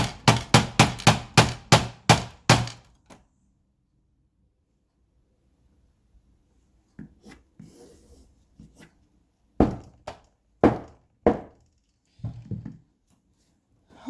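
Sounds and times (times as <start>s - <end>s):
knocking on projector parts: 0.0s - 3.0s, 9.6s - 11.6s.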